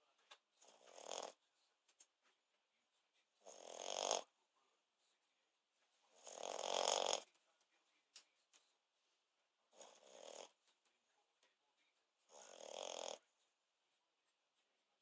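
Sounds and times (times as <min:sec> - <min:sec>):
dog snoring: 0:00.6 - 0:01.4, 0:03.4 - 0:04.3, 0:06.1 - 0:07.3, 0:09.7 - 0:10.6, 0:12.2 - 0:13.3.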